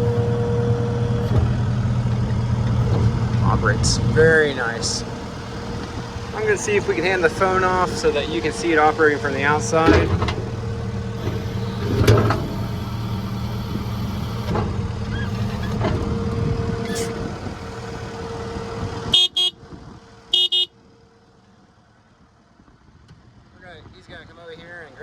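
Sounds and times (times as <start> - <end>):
diesel engine running: 0.0 - 25.0
metal clank: 9.5 - 12.8.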